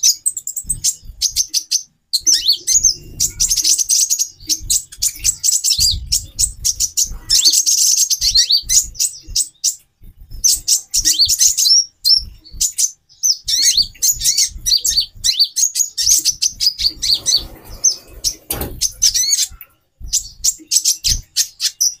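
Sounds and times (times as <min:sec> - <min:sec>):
birds chirping rapidly: 0:00.0 - 0:22.0
short rustle: 0:16.8 - 0:19.1.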